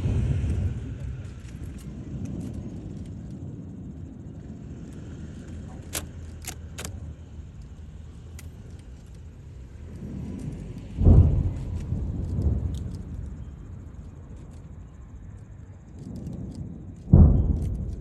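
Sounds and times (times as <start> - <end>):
fireworks rumble of bursts: 0.0 - 18.0
sharp crackling pops: 5.0 - 13.3.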